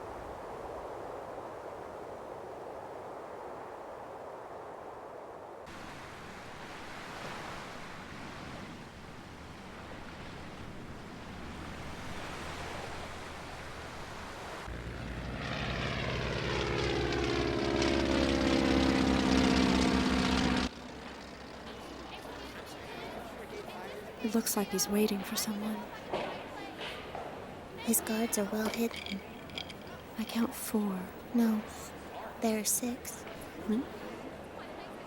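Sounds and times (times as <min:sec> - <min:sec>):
propeller aircraft passing: 0:11.2 - 0:34.0.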